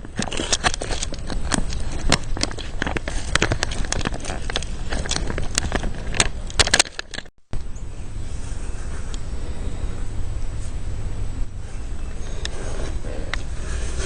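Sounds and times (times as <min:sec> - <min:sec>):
packaging crackling: 0:00.1 - 0:07.3.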